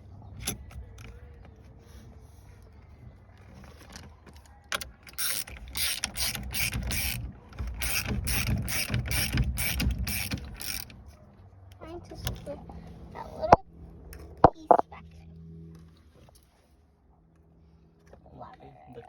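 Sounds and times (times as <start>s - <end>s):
hand tool rapid clicks: 5.2s - 7.2s, 7.8s - 10.9s.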